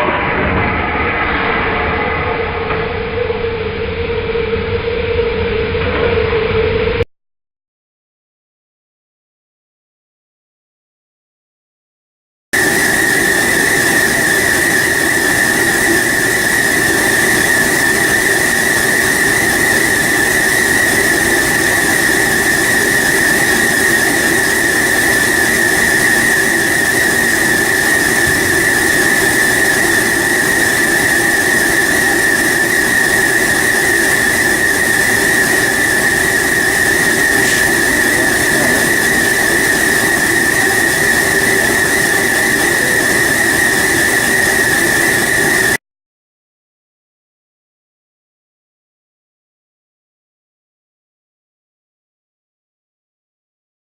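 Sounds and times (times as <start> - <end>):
machine whining: 0.0 - 7.1, 12.6 - 45.8.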